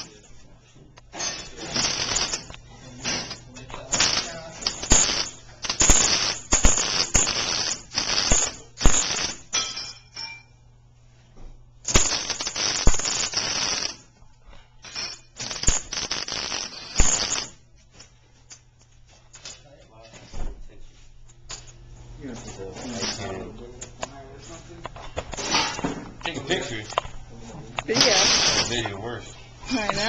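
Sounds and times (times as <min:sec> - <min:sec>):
low electrical hum: 0:00.0 - 0:30.0
welding arc crackling: 0:01.2 - 0:09.6, 0:11.8 - 0:14.1, 0:14.8 - 0:17.6, 0:22.9 - 0:23.4, 0:27.9 - 0:28.8.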